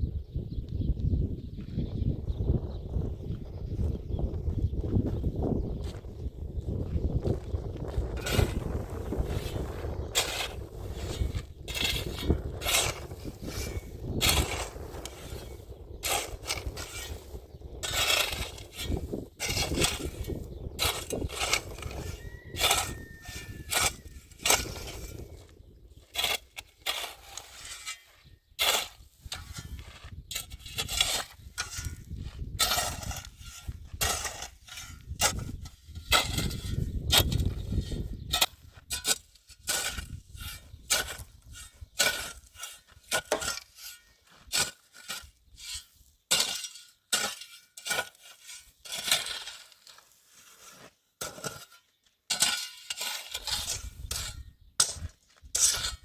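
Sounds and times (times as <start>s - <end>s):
short squeak: 21.8s - 24.2s.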